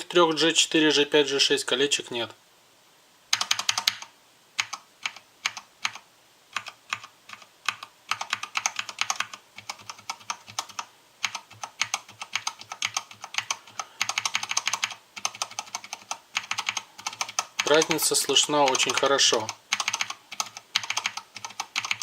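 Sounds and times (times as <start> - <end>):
mechanical keyboard keystrokes: 3.3 - 6.0, 6.6 - 22.0.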